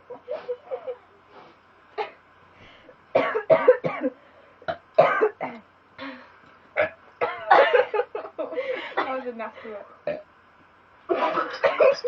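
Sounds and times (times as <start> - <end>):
woman coughing: 3.2 - 4.2, 5.0 - 5.6, 6.8 - 8.0, 8.9 - 9.2, 11.2 - 12.0.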